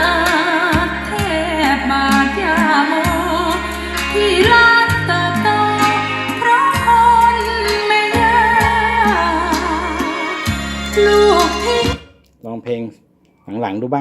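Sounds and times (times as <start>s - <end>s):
instrumental accompaniment with beat: 0.0s - 12.2s
person singing with vibrato: 0.0s - 12.2s.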